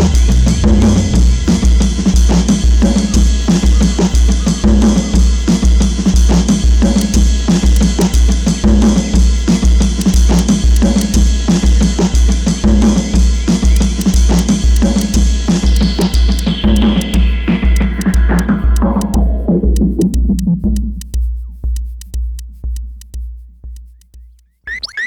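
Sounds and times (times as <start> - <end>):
pulsing bass line: 0.0 - 6.8, 13.1 - 25.0
drum kit playing: 0.0 - 25.0.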